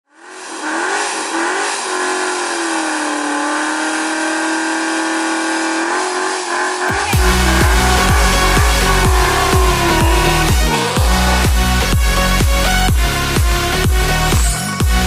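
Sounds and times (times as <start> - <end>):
car engine revving: 0.1 - 14.2.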